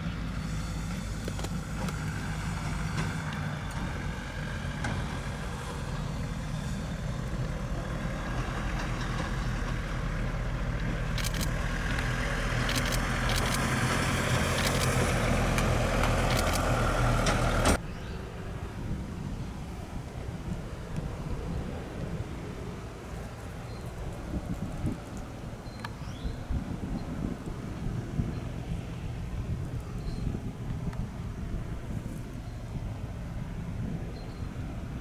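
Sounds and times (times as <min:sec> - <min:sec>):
engine running with low hum: 0:00.0 - 0:35.0
clicks: 0:01.2 - 0:02.1, 0:11.2 - 0:12.1, 0:12.7 - 0:13.7, 0:14.6 - 0:15.0, 0:16.3 - 0:16.8.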